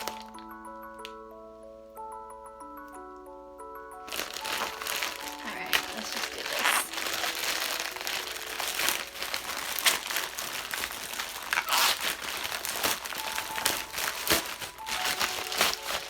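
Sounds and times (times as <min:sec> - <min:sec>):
packaging crinkling and rustling: 0:00.0 - 0:01.2, 0:04.0 - 0:16.0.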